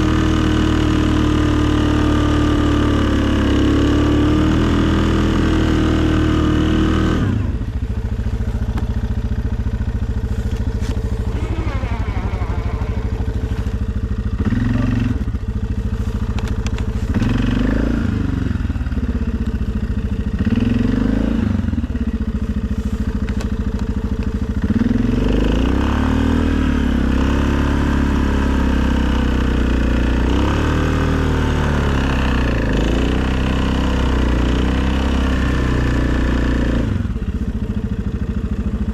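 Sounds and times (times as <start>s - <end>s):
atv engine revving: 0.0s - 38.9s.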